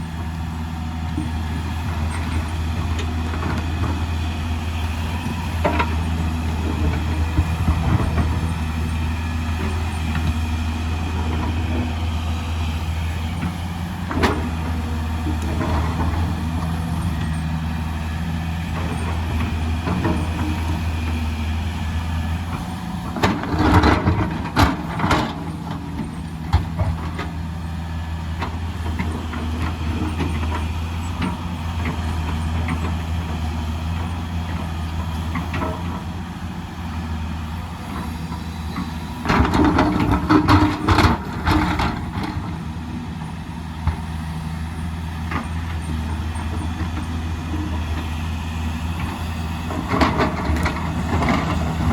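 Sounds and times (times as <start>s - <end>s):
excavator diesel engine running: 0.0s - 51.9s.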